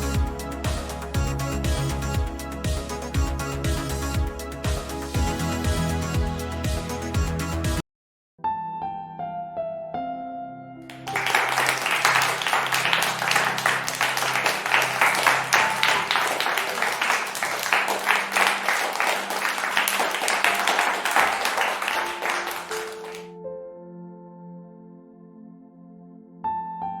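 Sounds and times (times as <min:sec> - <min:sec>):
soft keyboard music: 0:00.0 - 0:07.8, 0:10.8 - 0:27.0
crowd applauding: 0:10.9 - 0:23.3.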